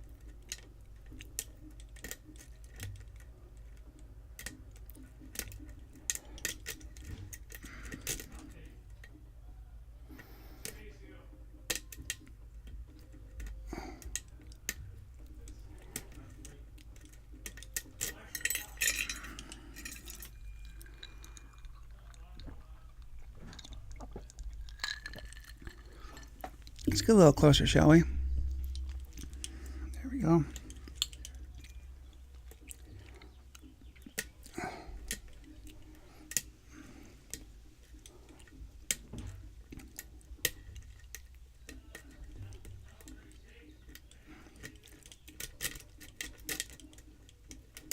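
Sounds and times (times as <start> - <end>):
steady low hum: 0.0 - 47.9
lock pick clicking and scraping: 0.2 - 8.6, 12.9 - 21.5, 28.5 - 47.9.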